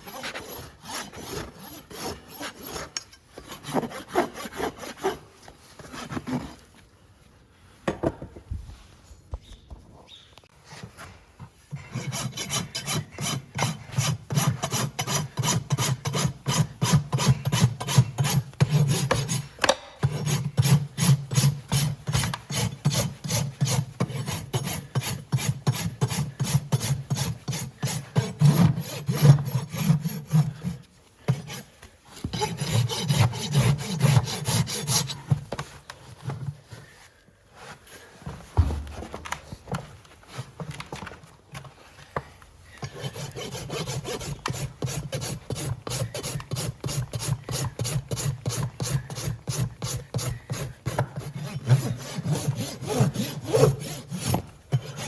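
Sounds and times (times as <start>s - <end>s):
rasp filing hoof: 0.0s - 5.2s, 11.7s - 36.7s, 42.8s - 55.0s.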